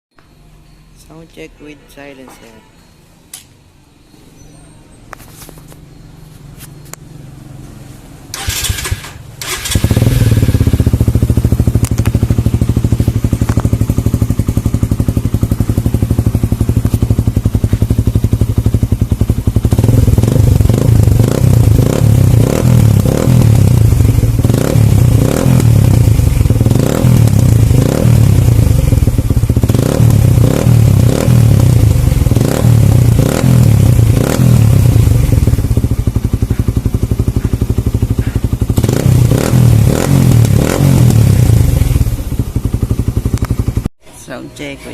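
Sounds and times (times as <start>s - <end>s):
motorcycle throttle blips: 5.0s - 43.9s
motorcycle engine idling: 6.3s - 44.9s.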